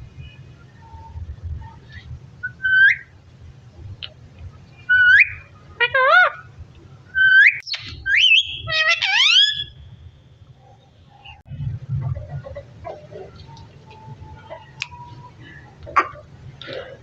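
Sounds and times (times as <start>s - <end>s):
parrot whistling and calling: 2.4s - 3.1s, 4.9s - 6.5s, 7.1s - 9.8s.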